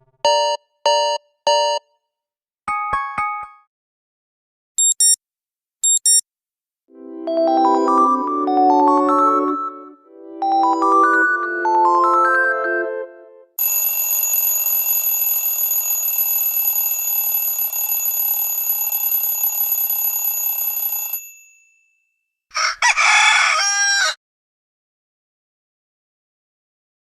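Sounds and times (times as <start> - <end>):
mechanical alarm bell ringing: 13.6 - 21.9
rooster crowing: 22.5 - 24.2.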